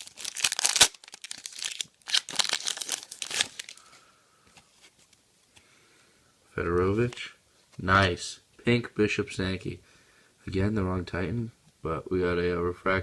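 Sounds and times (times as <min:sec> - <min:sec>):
wrapper crinkling and tearing: 0:00.0 - 0:03.9.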